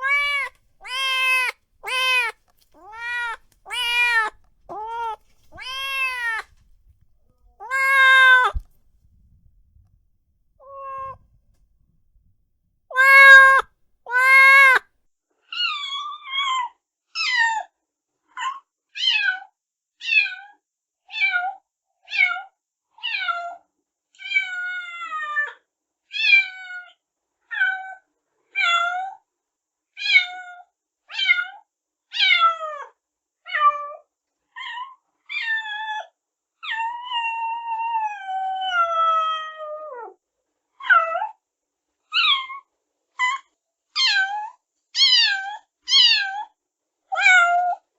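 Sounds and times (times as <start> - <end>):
kittens mewing: 0.0 - 6.6, 7.6 - 8.7, 13.0 - 14.8.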